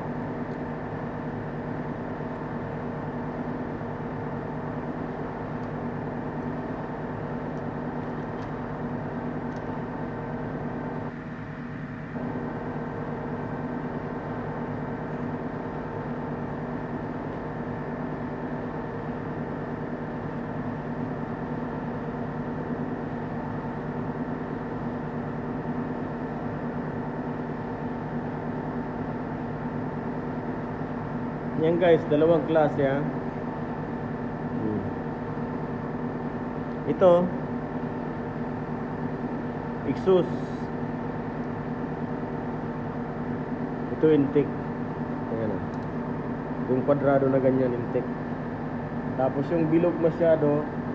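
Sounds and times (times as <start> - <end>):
machine hum: 0.0 - 50.9.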